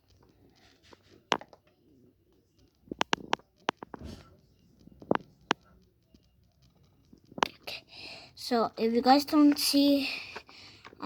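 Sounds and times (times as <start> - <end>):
clicks and taps of small objects: 0.9 - 1.7, 2.6 - 4.0, 4.8 - 7.8.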